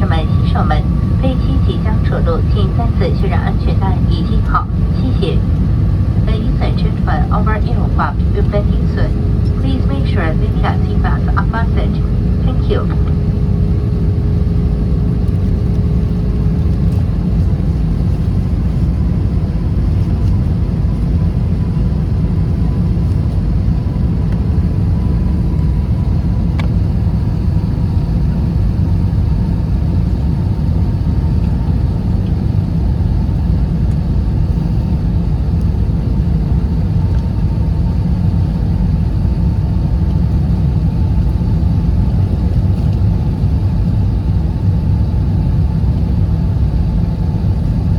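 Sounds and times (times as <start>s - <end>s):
faint steady hum: 0.0s - 21.1s
airliner engine and airflow rumble: 0.0s - 47.9s.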